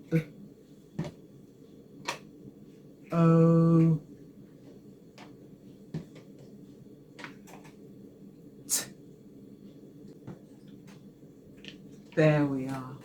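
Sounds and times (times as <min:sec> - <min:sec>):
low steady hum: 0:00.0 - 0:13.0.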